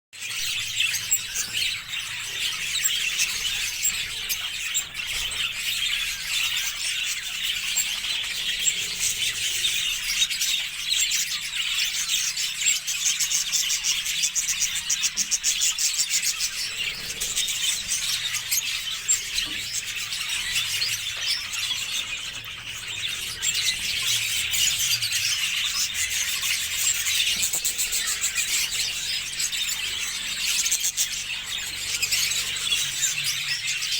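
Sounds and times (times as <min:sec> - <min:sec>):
budgerigars chirping: 0:00.2 - 0:33.9.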